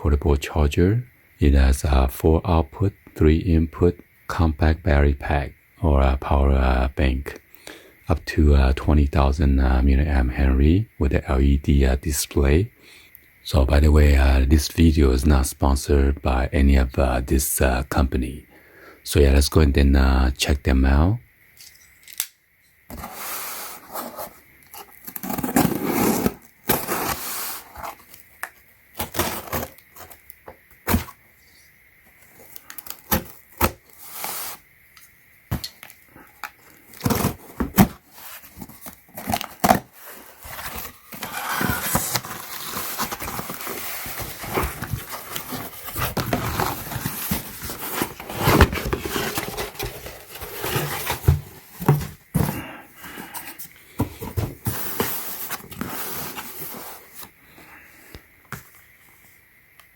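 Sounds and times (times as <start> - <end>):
packaging clicks and scrapes: 22.9 - 28.2, 29.0 - 31.1, 35.6 - 52.6
packaging crinkling and rustling: 35.6 - 52.2.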